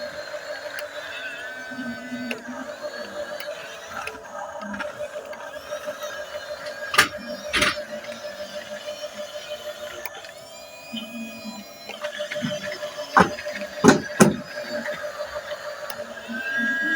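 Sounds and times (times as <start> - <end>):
small electric motor whining: 0.0 - 16.9
sharp knocks: 13.2 - 14.5.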